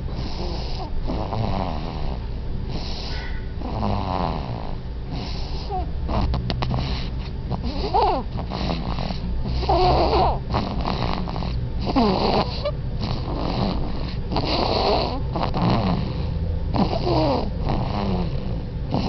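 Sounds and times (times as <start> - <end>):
baby snoring: 0.0 - 19.0.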